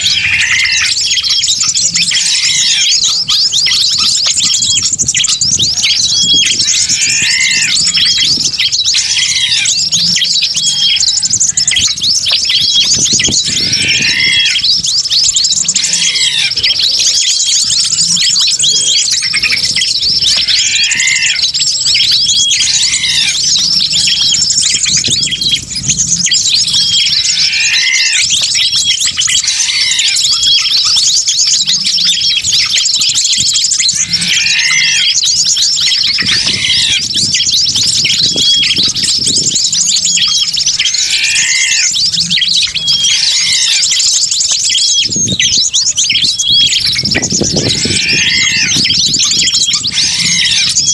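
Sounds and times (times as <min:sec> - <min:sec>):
loud arched bird call: 0:00.0 - 0:03.2, 0:05.9 - 0:12.0, 0:12.6 - 0:17.5, 0:18.8 - 0:24.6, 0:26.6 - 0:31.0, 0:33.8 - 0:38.9, 0:40.1 - 0:44.1, 0:46.4 - 0:50.9
small birds chirping and twittering: 0:00.0 - 0:50.9.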